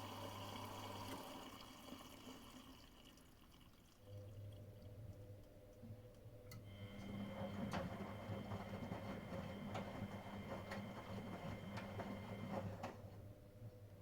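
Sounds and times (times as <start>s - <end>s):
washing machine drum motor whine: 6.6s - 13.3s.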